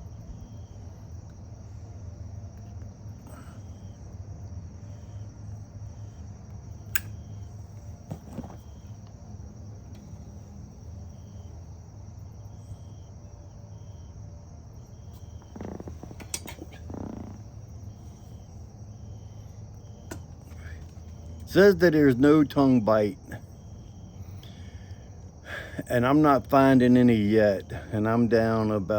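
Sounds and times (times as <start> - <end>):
insect chirping in high pulses: 0.0 - 28.9
low steady hum: 0.0 - 28.9
sharp clicks: 6.8 - 7.5.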